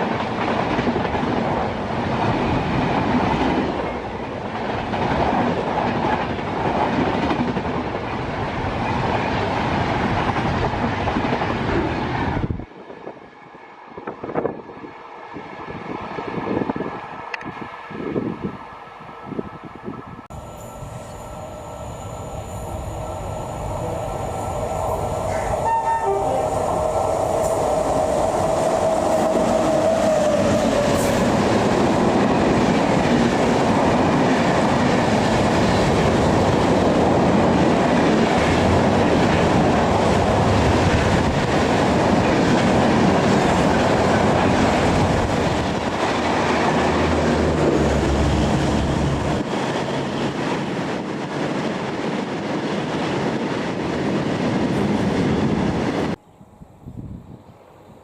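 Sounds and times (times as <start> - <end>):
train coaches rushing and clattering: 0.0 - 13.2, 19.9 - 56.2
train horn: 24.7 - 26.8.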